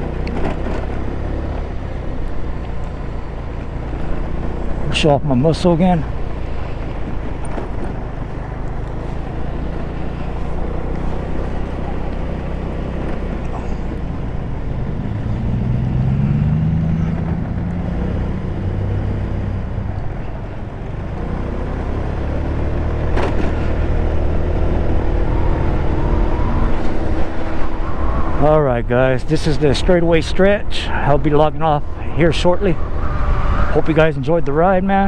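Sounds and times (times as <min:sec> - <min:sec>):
scooter engine running: 0:05.8 - 0:26.0.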